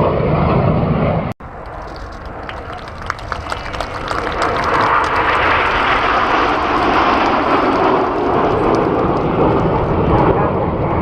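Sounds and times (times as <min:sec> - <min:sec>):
jet aircraft flying past: 0:00.0 - 0:11.0.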